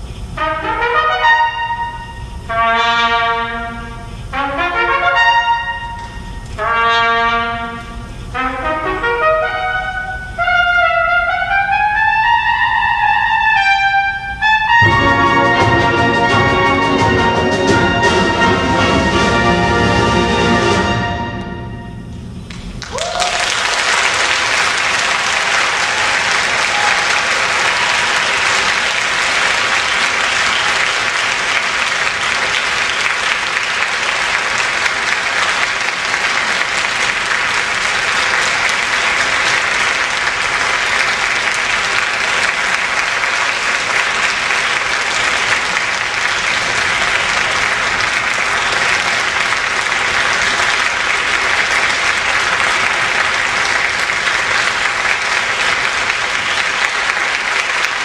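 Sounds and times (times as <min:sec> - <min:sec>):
audience applauding: 0:22.5 - 0:58.0.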